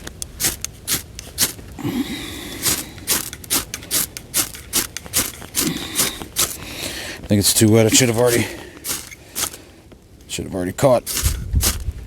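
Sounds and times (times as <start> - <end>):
fire starter scraping strikes: 0.0 - 9.8, 10.8 - 12.0.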